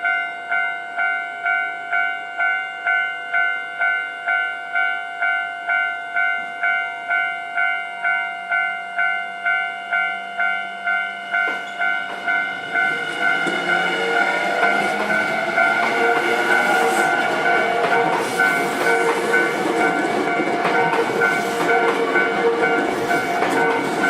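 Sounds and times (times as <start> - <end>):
level crossing warning bell: 0.0 - 24.0
train rumble: 11.4 - 24.0.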